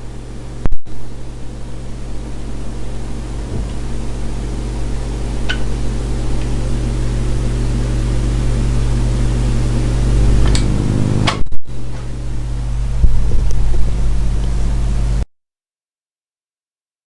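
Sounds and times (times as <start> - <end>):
low electrical hum: 0.0 - 15.2
television static hiss: 0.0 - 15.2.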